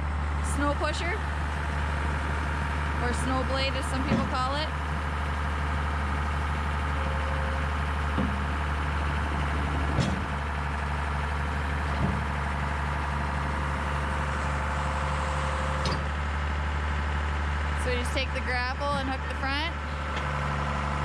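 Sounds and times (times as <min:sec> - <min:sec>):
tractor engine idling: 0:00.0 - 0:21.0.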